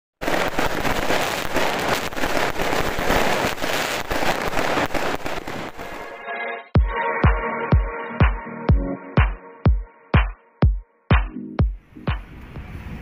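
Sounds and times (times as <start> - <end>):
firecrackers crackling: 0.2 - 6.2
electronic dance music: 5.8 - 12.2.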